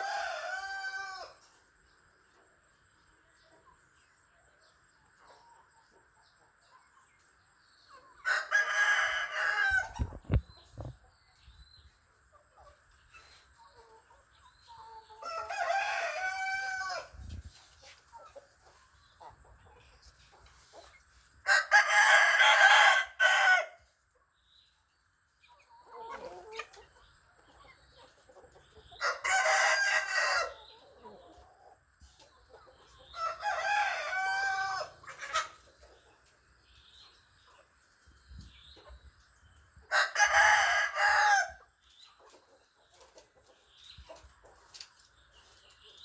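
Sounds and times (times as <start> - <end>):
roosters crowing: 0.0 - 1.4, 8.2 - 10.1, 15.2 - 17.1, 21.5 - 23.8, 29.0 - 30.6, 33.2 - 35.5, 39.9 - 41.6.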